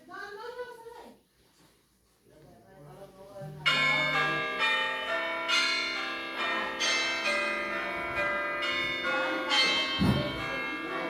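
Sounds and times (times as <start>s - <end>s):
bell-like timer chime: 3.7s - 11.0s.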